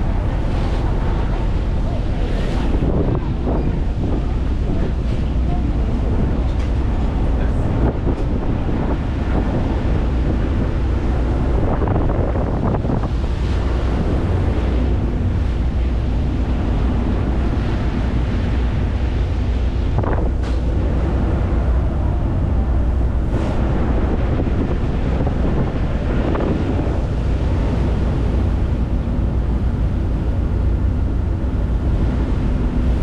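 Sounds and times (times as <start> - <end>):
low engine drone: 0.0 - 33.0
water washing: 0.0 - 33.0
wind buffeting microphone: 0.0 - 33.0.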